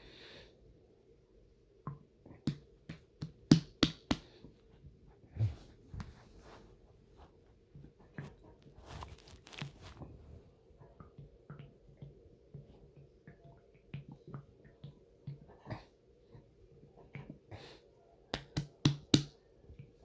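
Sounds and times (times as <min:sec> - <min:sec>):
stomach gurgling and popping: 0:07.8 - 0:17.5.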